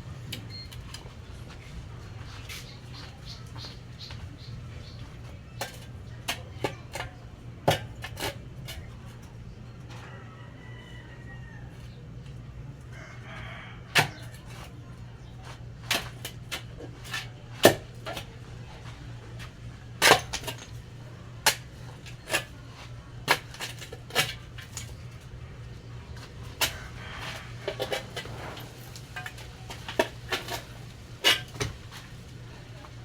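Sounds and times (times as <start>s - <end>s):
rooster crowing: 9.9s - 12.1s, 12.9s - 14.4s, 26.6s - 28.8s.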